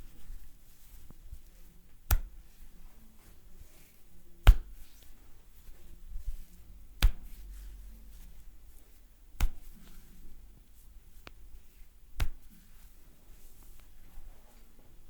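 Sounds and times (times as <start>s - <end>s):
hands snapping cracks: 2.1s - 2.4s, 4.4s - 4.8s, 7.0s - 7.5s, 9.4s - 9.9s, 12.1s - 12.5s.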